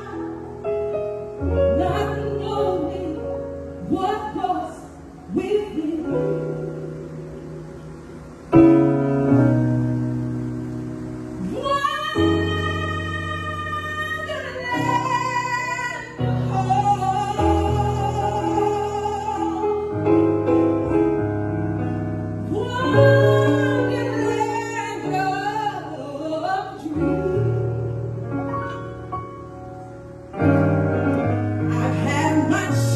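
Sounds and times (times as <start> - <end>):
woman singing: 0.0 - 0.7, 1.6 - 7.3, 11.4 - 20.1, 22.4 - 28.9, 31.6 - 32.9
instrumental accompaniment: 26.9 - 32.9.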